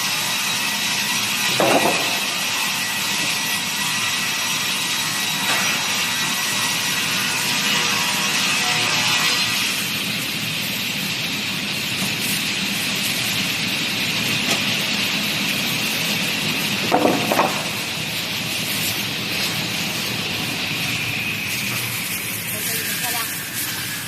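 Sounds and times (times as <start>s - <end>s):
saw cutting wood: 0.0s - 10.0s, 16.7s - 24.0s
saw machinery whining: 17.5s - 24.0s.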